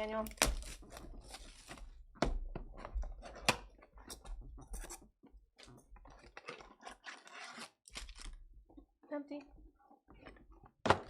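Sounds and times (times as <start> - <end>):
foil wrapper crinkling and tearing: 0.0 - 1.9, 7.1 - 8.4.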